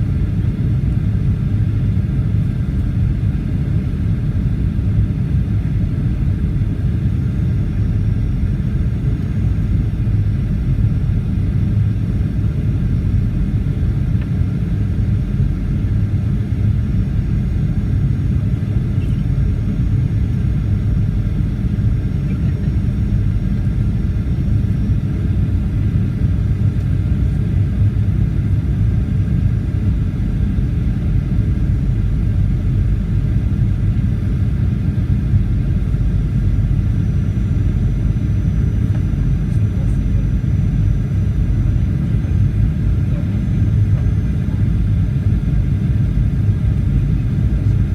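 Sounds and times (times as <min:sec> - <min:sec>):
airplane cabin roar: 0:00.0 - 0:47.9.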